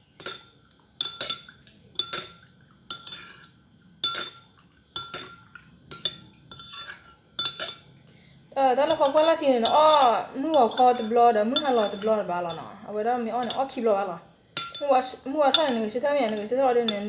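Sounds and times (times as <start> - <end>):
utensil clinking on a dish: 0.2 - 8.0, 8.8 - 13.8, 14.6 - 17.0.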